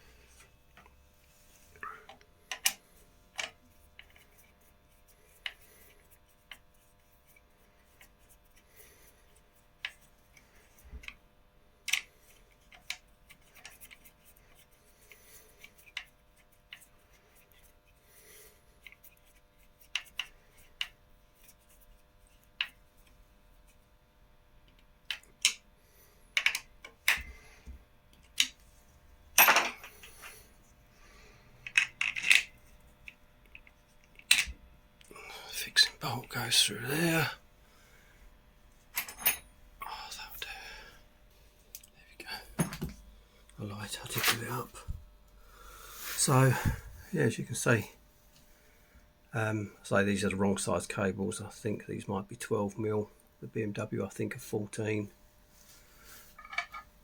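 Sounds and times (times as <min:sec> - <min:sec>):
faint steady hum: 0:00.0 - 0:57.0
clatter of parts: 0:29.4 - 0:30.3, 0:31.6 - 0:32.6.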